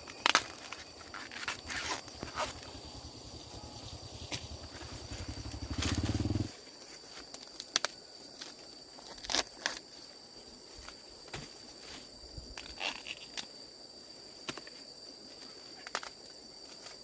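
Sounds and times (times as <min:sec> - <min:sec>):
steady high whine: 0:02.0 - 0:06.5
small engine running: 0:04.6 - 0:06.5.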